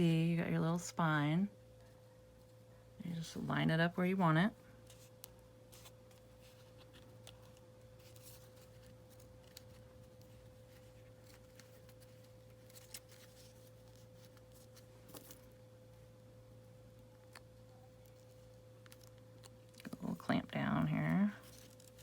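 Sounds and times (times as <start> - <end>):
low electrical hum: 0.0 - 22.0
paper rustling and clicking: 4.9 - 15.5.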